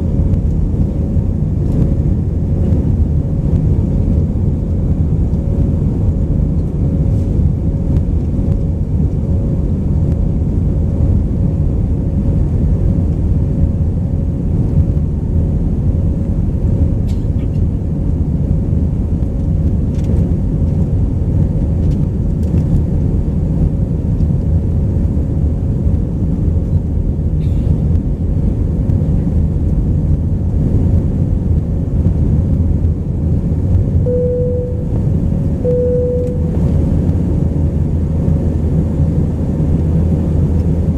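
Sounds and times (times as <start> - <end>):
aircraft cabin engine rumble: 0.0 - 40.9
faint steady hum: 30.9 - 40.7.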